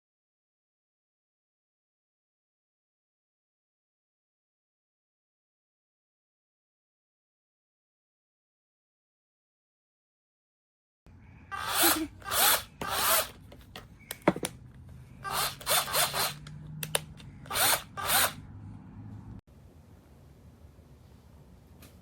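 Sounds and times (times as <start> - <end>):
cordless drill whirring: 11.5 - 13.5, 15.2 - 18.4.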